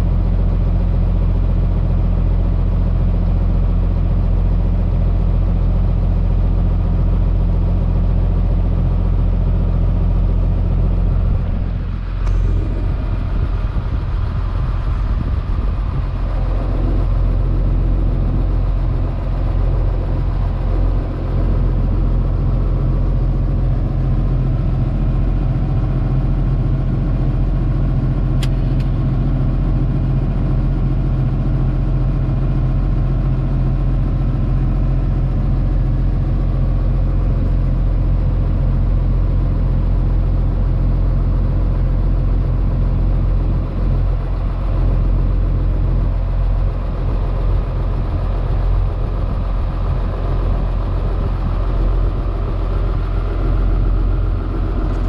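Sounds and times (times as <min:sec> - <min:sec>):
combine harvester engine drone: 0:00.0 - 0:55.0
sharp click: 0:28.4 - 0:29.0.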